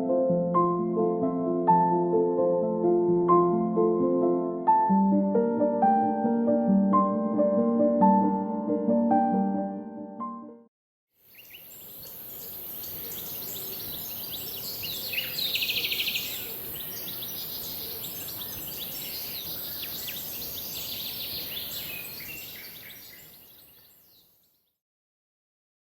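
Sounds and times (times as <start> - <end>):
steady high hiss: 11.3 - 22.6
small birds chirping: 11.3 - 24.7.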